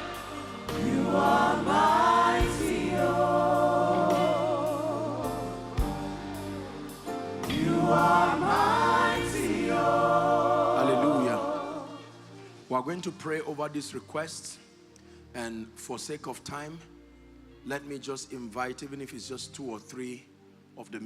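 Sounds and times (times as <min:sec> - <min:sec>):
instrumental backing: 0:00.0 - 0:12.5
voices singing gospel song: 0:00.0 - 0:12.6.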